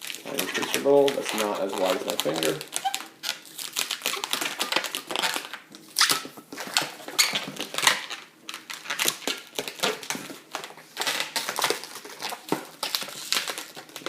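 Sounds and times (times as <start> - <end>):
balloon squeaking being twisted: 0.0 - 8.3.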